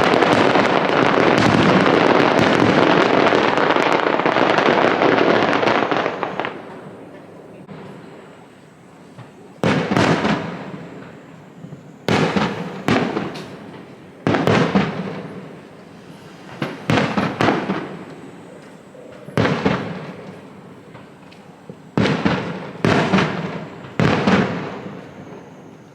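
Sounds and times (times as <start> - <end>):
firework shells bursting: 12.1 - 18.8.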